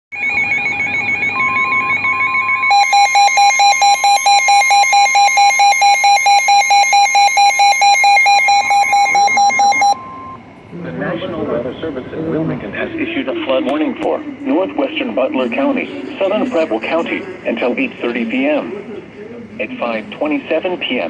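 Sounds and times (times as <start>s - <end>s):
pulsing beep alarm: 0.1s - 10.4s
warbling siren alarm: 0.1s - 10.5s
steady warning tone: 0.1s - 21.0s.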